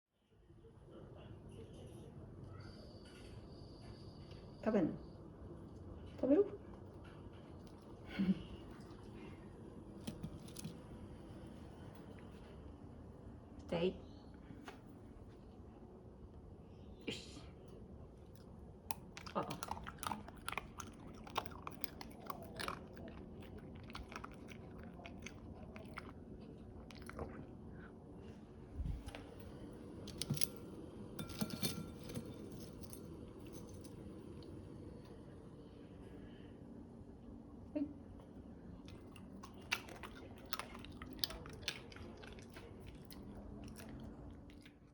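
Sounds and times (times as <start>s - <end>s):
dog chewing and crunching food: 8.6s - 12.7s, 18.2s - 35.1s, 38.7s - 44.9s.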